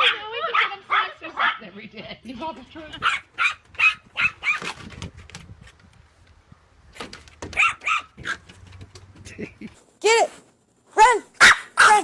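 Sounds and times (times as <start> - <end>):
small dog yapping: 3.0 - 4.8, 7.5 - 8.5, 11.4 - 12.0.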